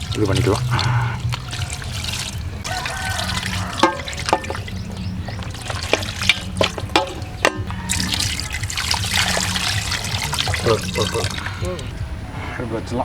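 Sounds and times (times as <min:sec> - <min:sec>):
vessels clinking and knocking: 0:00.0 - 0:12.0
water pouring into a pot: 0:00.0 - 0:12.0.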